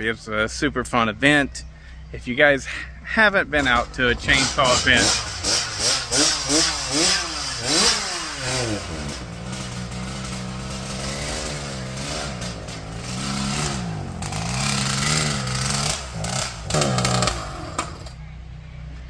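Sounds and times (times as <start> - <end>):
chainsaw running unloaded: 3.6 - 18.2.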